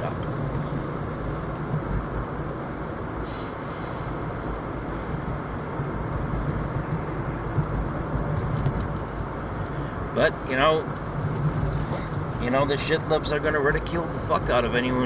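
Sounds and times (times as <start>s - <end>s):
car cabin road noise: 0.0s - 15.0s.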